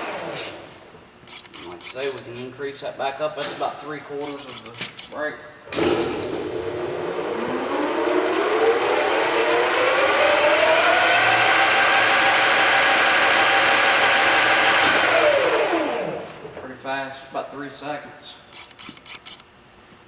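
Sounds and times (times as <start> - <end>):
lathe spindle whining: 5.8 - 16.5.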